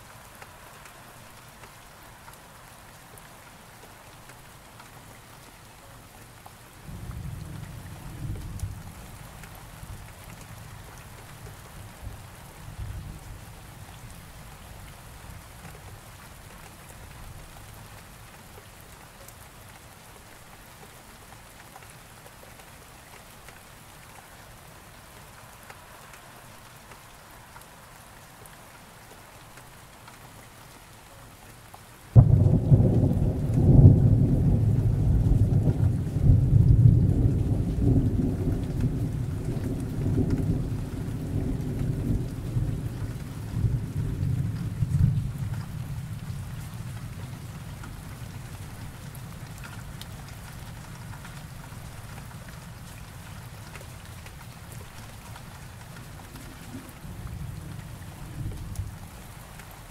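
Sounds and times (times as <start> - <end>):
steady rain: 0.0 - 59.9
thunderclap with low rumble: 32.2 - 47.6.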